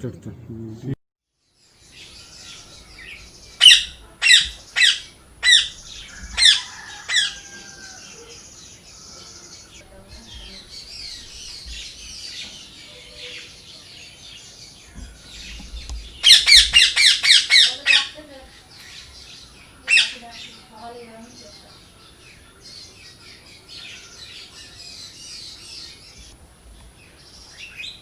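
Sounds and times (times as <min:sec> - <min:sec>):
birds chattering calls: 0:01.6 - 0:28.0
birds squawking harshly: 0:02.0 - 0:13.7, 0:14.9 - 0:25.6.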